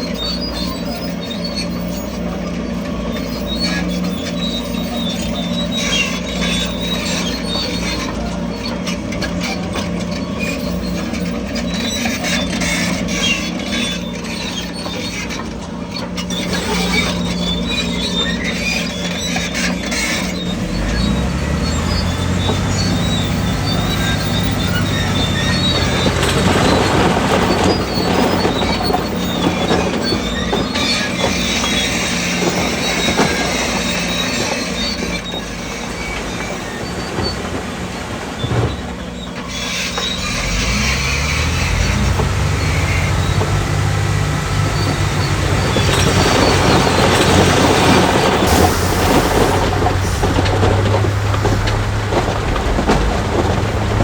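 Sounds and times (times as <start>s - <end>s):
bulldozer diesel engine running: 0.0s - 54.0s
steel tracks squealing and clattering: 0.0s - 54.0s.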